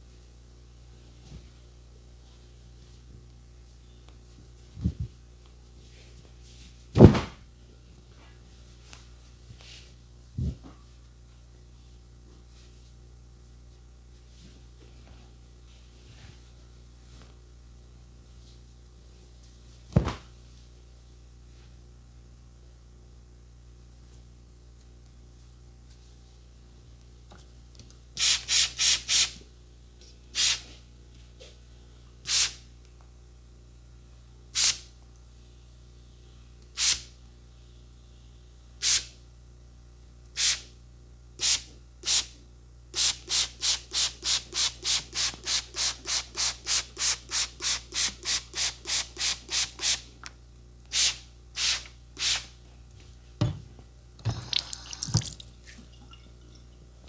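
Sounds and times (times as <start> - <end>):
spray bottle squirting: 54.3 - 55.4.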